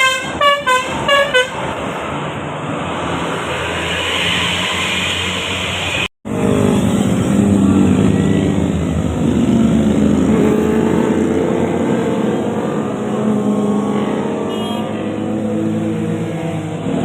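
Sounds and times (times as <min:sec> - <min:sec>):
large vehicle engine pulling past: 0:02.0 - 0:16.8.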